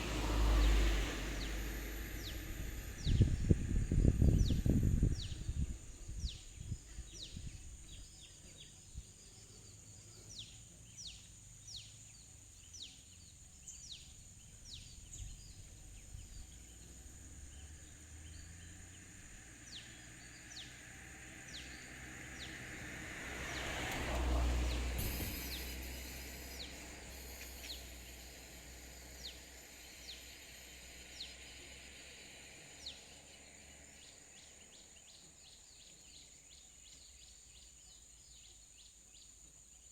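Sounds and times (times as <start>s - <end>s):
high insect drone: 0.0s - 39.9s
bird high downward call: 24.5s - 33.2s.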